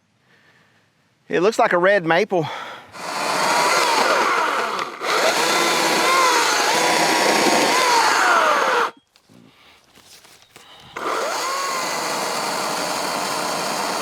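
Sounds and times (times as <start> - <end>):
electric chainsaw cutting wood: 3.0 - 9.0, 11.0 - 14.0.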